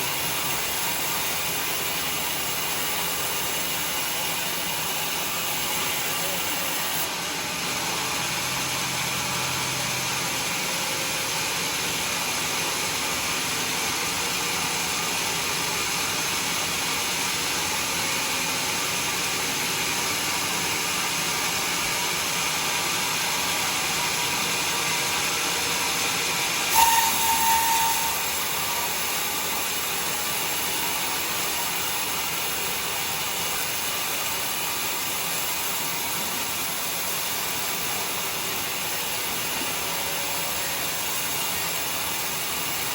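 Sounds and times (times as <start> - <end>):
sawmill saw cutting log: 0.0 - 42.9
high saw squeal: 26.6 - 32.5, 37.8 - 42.9.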